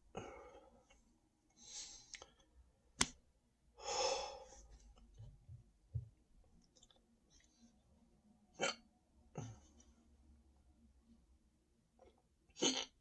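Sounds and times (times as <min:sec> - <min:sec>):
person sighing heavily: 0:03.8 - 0:04.6
soft low thumps: 0:05.2 - 0:06.2.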